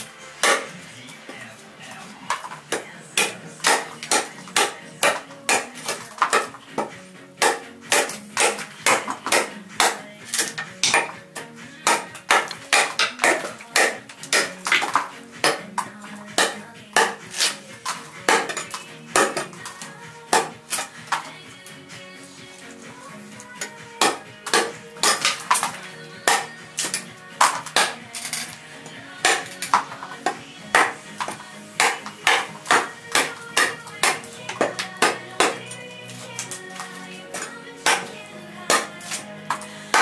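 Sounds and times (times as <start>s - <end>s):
background music: 0.0s - 40.0s
knife chopping with metallic ring: 7.4s - 11.2s, 11.8s - 15.7s, 16.4s - 17.6s, 18.3s - 19.5s, 24.0s - 25.7s, 26.3s - 28.0s, 29.2s - 35.6s.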